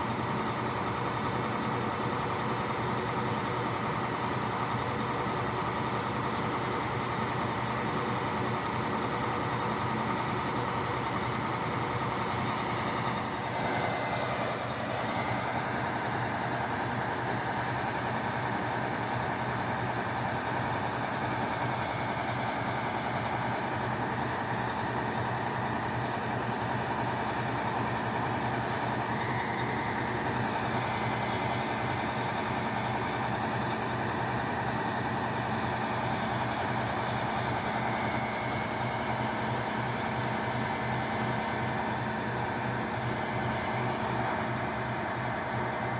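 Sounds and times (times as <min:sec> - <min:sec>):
drilling rig engine running: 0:00.0 - 0:45.9.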